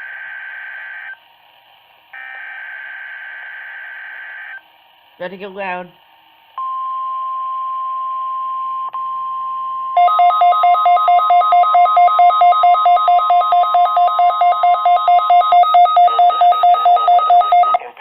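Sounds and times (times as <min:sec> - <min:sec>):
steady attention tone: 0:06.6 - 0:18.0
two-tone warbling alarm: 0:10.0 - 0:17.8.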